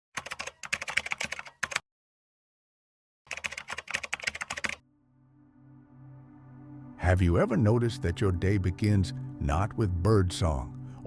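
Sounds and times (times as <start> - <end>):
typing on a keyboard: 0.2 - 1.8, 3.3 - 4.8.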